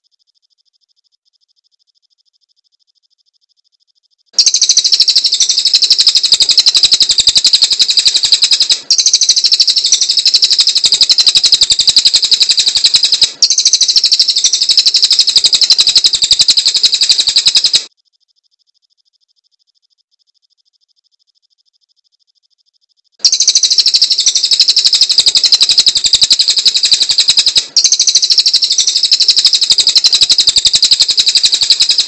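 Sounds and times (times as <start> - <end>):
bird singing high-pitched trill: 0.0 - 32.0.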